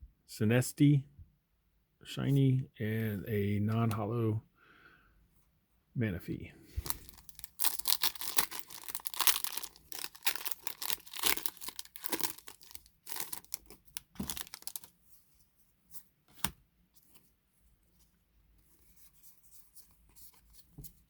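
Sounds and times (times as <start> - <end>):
foil wrapper tearing and crinkling: 6.8 - 14.9.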